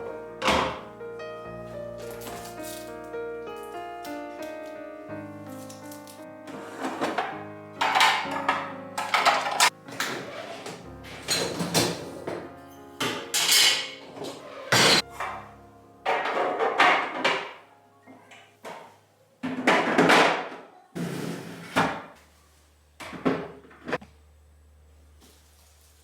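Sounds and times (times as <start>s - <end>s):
containers knocking and clunking: 6.9s - 10.1s, 16.1s - 17.6s.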